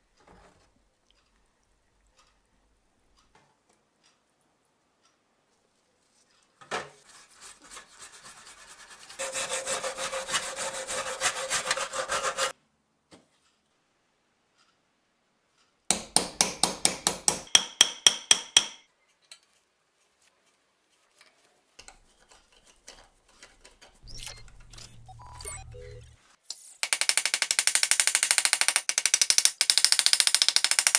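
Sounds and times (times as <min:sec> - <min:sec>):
hand rubbing strokes on metal part: 0:07.1 - 0:12.5
sharp rasping strokes with ringing: 0:09.2 - 0:12.5.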